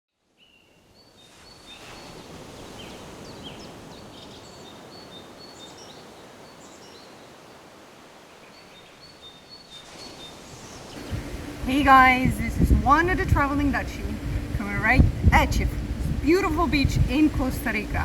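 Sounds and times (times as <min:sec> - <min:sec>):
steady rushing noise: 0:10.5 - 0:18.0.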